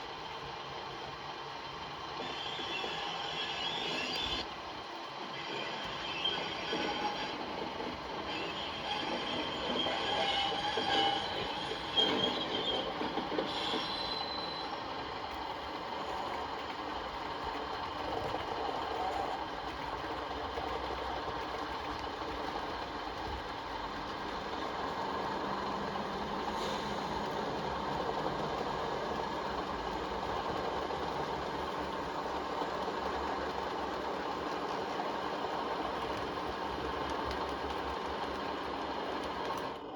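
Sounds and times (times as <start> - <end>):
model train wheels rolling: 0.0 - 39.9
high wheel squeal: 2.2 - 4.4, 5.3 - 14.8.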